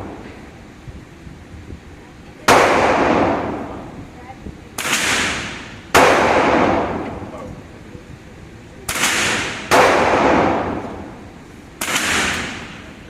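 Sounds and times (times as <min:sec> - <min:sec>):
gunshots with echo: 0:02.5 - 0:03.9, 0:04.8 - 0:07.4, 0:08.9 - 0:11.2, 0:11.8 - 0:13.0.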